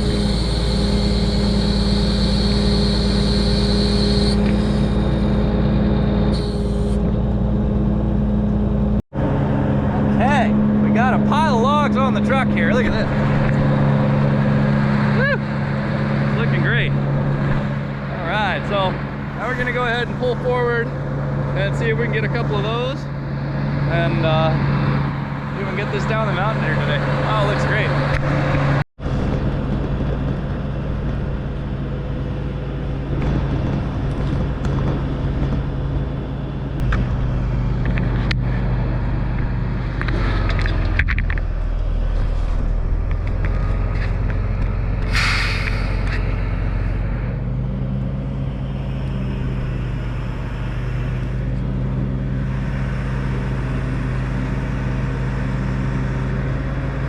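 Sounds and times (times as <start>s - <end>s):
truck diesel engine running: 0.0s - 57.0s
air brake hiss: 45.1s - 46.0s.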